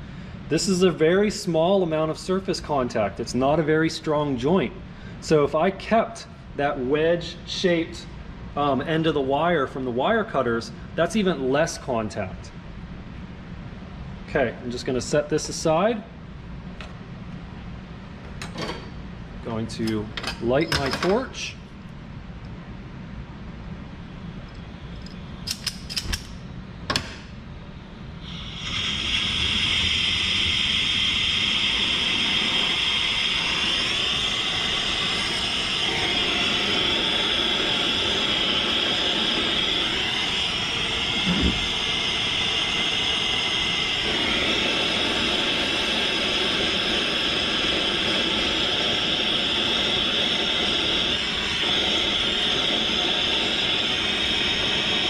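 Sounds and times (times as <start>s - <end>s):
torch striker clicks: 25.4s - 26.4s
soldering torch hissing: 28.2s - 55.0s.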